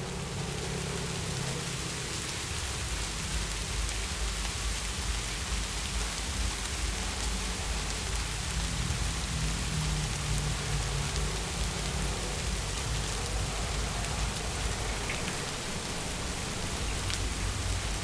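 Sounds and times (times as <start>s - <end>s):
heavy rain: 0.0s - 18.0s
low rumble: 6.4s - 18.0s.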